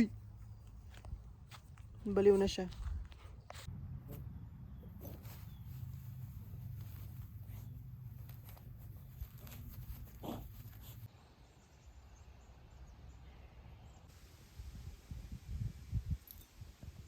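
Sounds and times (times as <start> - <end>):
small dog scuffling and clicking: 5.0 - 11.1.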